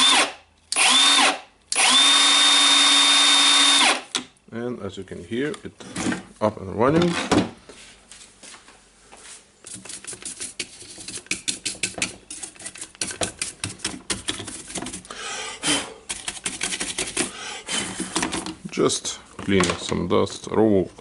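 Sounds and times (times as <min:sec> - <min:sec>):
plastic tool parts clicking and rattling: 0:16.1 - 0:18.7.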